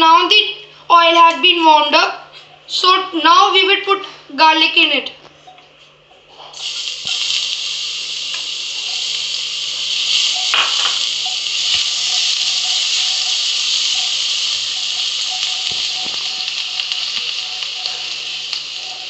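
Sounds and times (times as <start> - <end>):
garlic sizzling in oil: 6.6 - 19.0.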